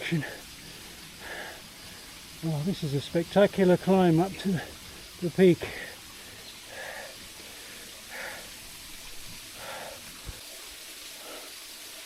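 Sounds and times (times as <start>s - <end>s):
steady hiss: 0.0s - 12.0s
person breathing hard: 0.2s - 1.7s, 5.7s - 8.6s, 9.5s - 10.4s, 11.1s - 11.7s.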